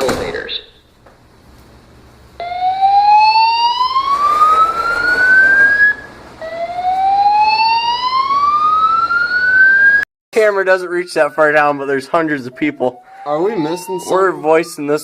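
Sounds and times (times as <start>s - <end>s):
fire alarm rising whoop: 2.4s - 10.0s, 11.0s - 15.0s.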